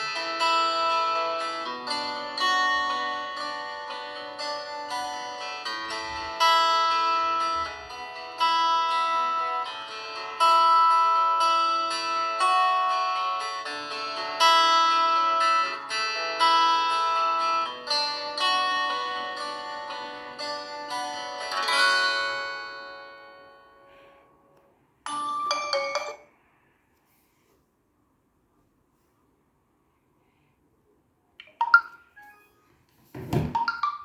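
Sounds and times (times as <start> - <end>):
plucked-string ringtone melody: 0.0 - 23.6, 25.1 - 26.3, 31.4 - 32.6, 33.5 - 34.0.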